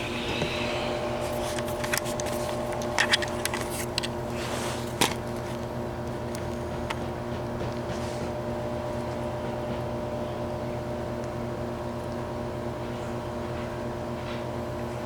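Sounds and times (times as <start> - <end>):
motor hum: 0.0 - 11.4.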